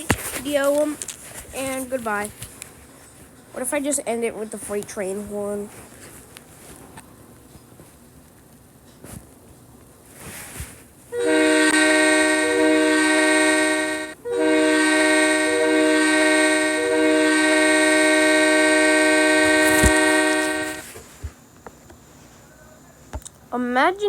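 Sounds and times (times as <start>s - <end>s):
freight train horn chord: 11.1s - 20.9s.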